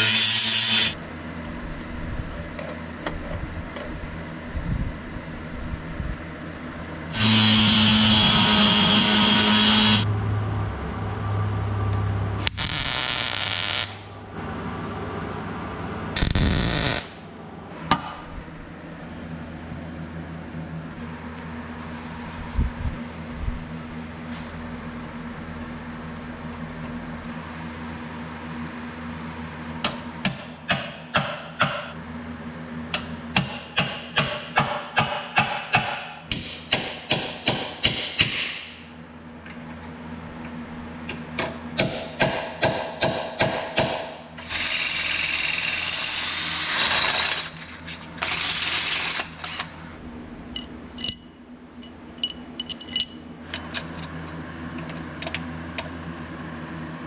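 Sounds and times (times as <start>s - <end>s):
bursts of tool noise: 0.0s - 1.0s, 7.1s - 10.1s
low hum: 0.7s - 29.6s.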